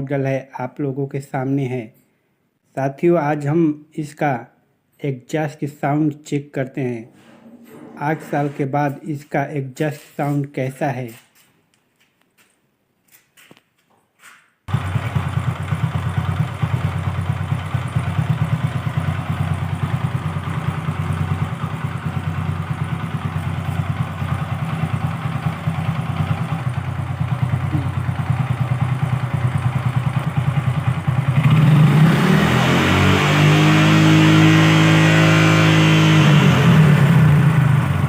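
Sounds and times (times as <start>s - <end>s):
motorcycle engine idling and revving: 14.7s - 38.0s.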